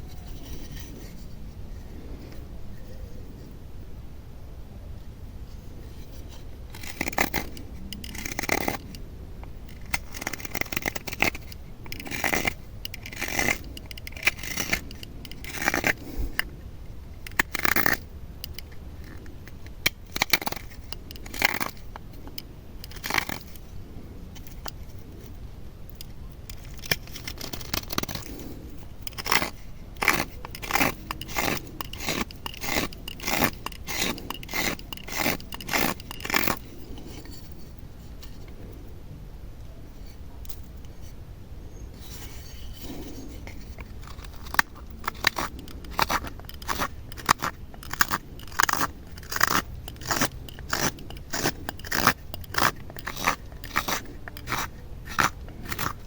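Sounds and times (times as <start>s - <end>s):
knife carving wood: 5.9s - 38.5s, 41.9s - 56.0s.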